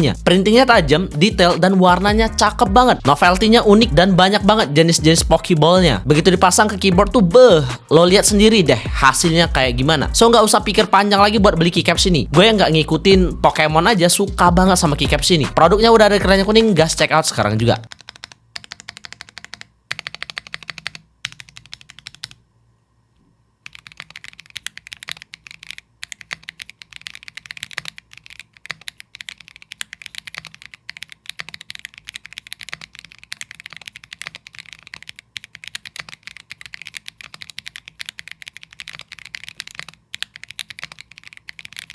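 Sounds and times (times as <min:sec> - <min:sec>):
fast typing on mechanical keyboard: 0:17.9 - 0:22.4, 0:23.6 - 0:41.9.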